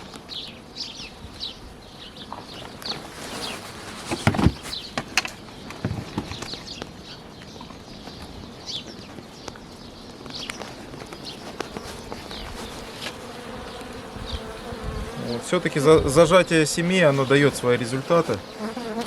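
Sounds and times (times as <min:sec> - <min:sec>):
bees humming: 0:00.0 - 0:06.6, 0:11.0 - 0:19.0
small birds chirping: 0:00.0 - 0:19.0.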